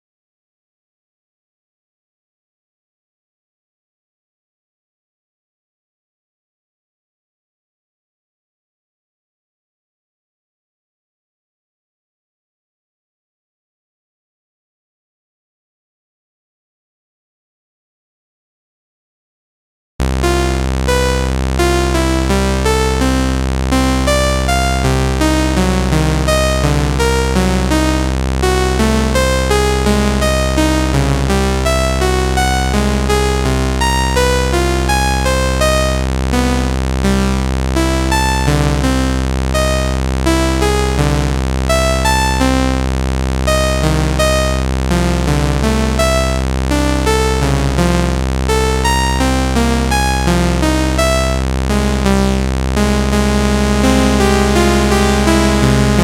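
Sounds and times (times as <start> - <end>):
steady low drone: 20.0 - 56.0
synthesizer short notes sequence: 45.2 - 56.0.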